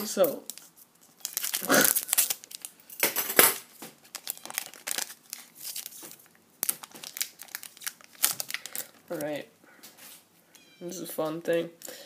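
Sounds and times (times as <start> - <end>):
wrapper tearing and crinkling: 0.0 - 9.3.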